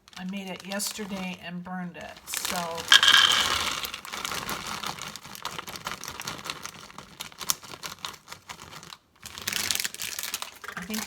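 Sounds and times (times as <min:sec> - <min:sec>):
packaging crinkling and clicking: 0:02.3 - 0:11.0.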